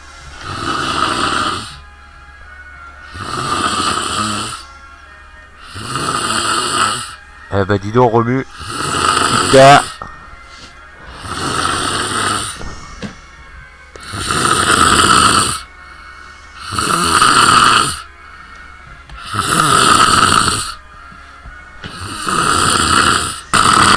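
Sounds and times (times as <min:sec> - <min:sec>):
person snoring loudly: 0:00.3 - 0:01.9, 0:03.0 - 0:04.7, 0:05.6 - 0:07.2, 0:08.5 - 0:10.0, 0:10.6 - 0:12.7, 0:14.0 - 0:15.7, 0:16.5 - 0:18.1, 0:19.1 - 0:20.8, 0:21.8 - 0:23.9.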